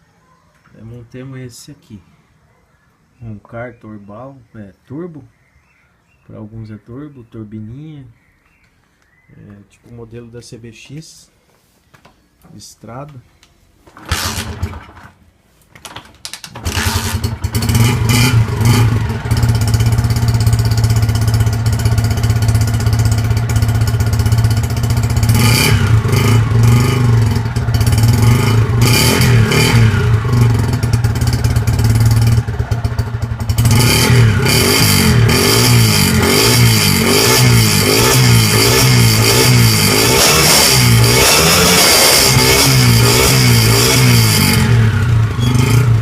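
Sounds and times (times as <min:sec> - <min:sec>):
engine revving: 0:14.1 - 0:14.9, 0:16.6 - 0:46.0
car engine starting and running: 0:16.6 - 0:46.0.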